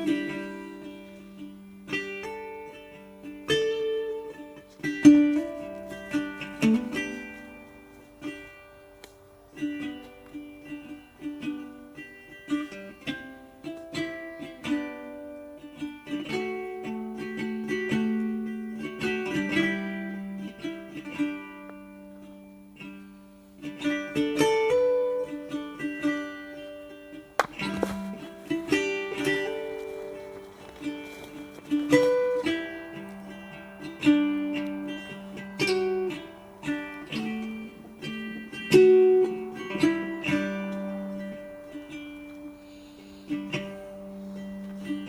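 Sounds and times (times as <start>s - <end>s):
plucked ukulele or guitar music: 0.0s - 45.0s.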